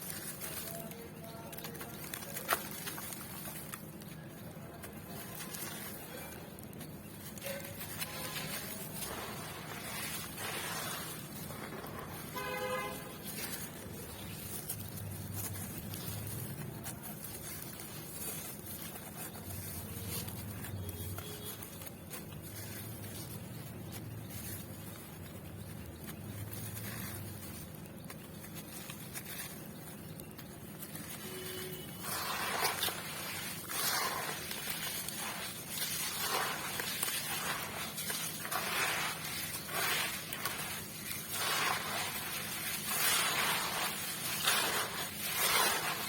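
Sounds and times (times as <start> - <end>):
traffic noise with low hum: 0.0 - 46.0
vehicle horn toot: 12.3 - 13.2, 31.2 - 32.0.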